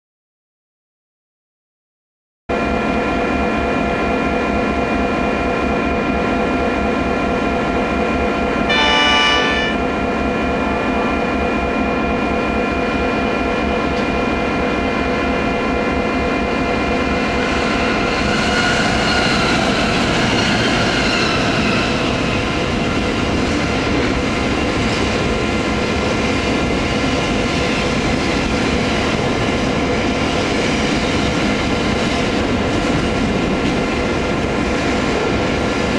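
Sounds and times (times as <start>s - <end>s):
locomotive braking whine: 8.6s - 13.2s
train horn blast: 8.7s - 9.9s.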